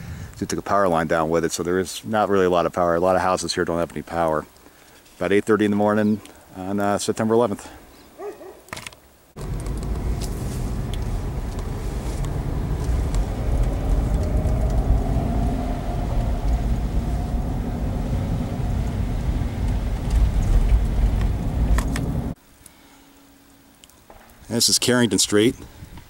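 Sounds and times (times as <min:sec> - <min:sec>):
car road and engine rumble: 0:09.4 - 0:22.4.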